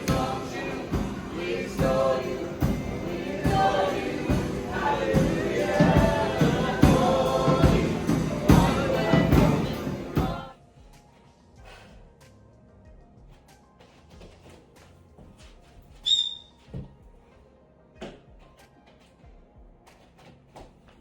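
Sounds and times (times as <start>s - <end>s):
song with choir-like singing: 0.0s - 10.6s.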